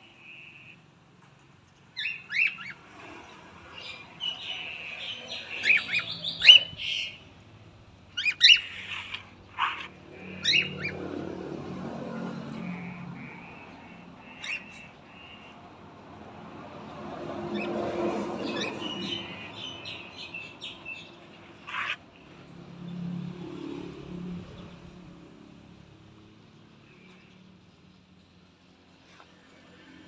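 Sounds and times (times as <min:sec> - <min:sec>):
cockatiels chirping: 0:02.0 - 0:02.8, 0:05.4 - 0:07.2, 0:08.2 - 0:11.0, 0:14.2 - 0:15.6, 0:18.3 - 0:20.1, 0:20.9 - 0:22.0.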